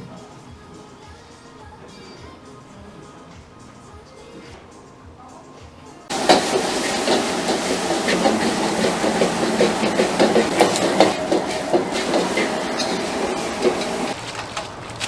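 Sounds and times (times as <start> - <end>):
food sizzling and crackling: 6.1 - 15.0.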